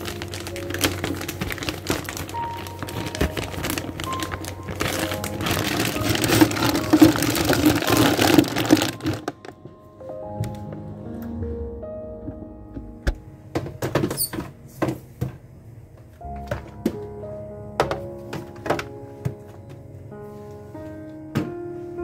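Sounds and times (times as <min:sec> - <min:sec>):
plastic packaging crinkling: 0:00.0 - 0:09.8
soft background music: 0:00.0 - 0:22.0.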